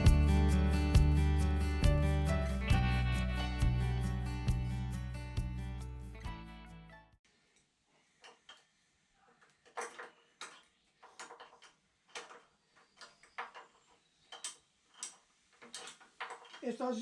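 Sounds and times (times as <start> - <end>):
background music: 0.0 - 7.1.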